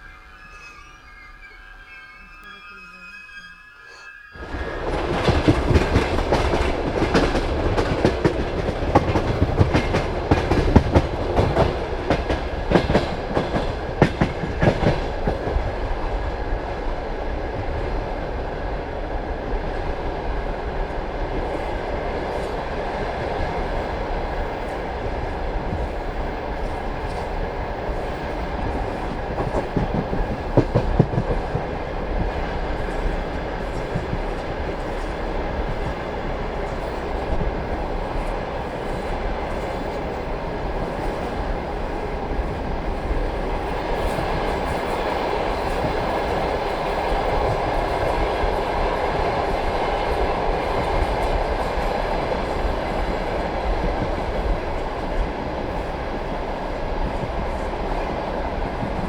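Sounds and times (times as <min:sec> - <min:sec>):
train running rumble: 0:04.4 - 0:59.0
train wheels clattering over joints: 0:04.8 - 0:15.6.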